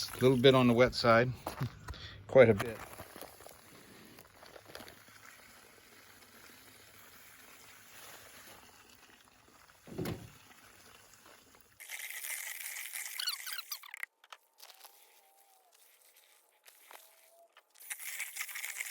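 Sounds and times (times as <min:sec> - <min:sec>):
bright hiss with small squeaks: 0:11.8 - 0:14.1.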